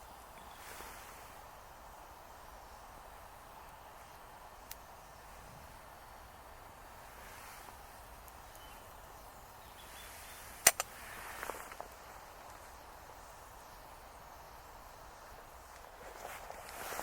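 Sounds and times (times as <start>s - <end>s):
faint outdoor background: 0.0s - 17.0s
light clicks and rustles: 10.0s - 12.8s, 15.3s - 17.0s
sharp click or snap: 10.6s - 10.9s.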